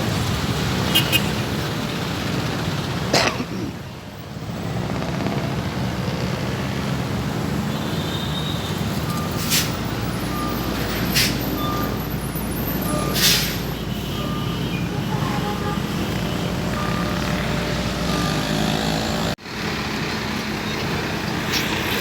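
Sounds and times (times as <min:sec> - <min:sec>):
short sharp hisses: 0:09.4 - 0:09.7.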